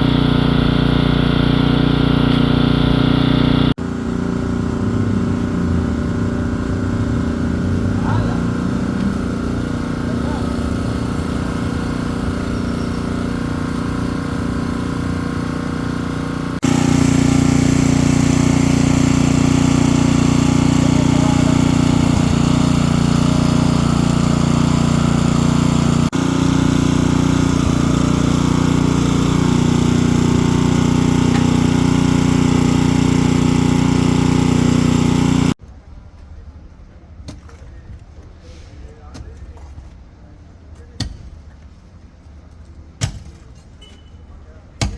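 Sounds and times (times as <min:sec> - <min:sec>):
small engine running steadily: 0:00.0 - 0:35.6.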